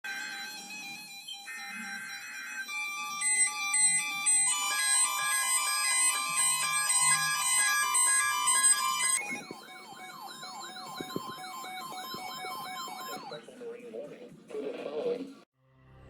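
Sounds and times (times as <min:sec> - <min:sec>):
electronic siren yelp: 0:00.2 - 0:13.4
stepping electronic alert tones: 0:01.2 - 0:13.4.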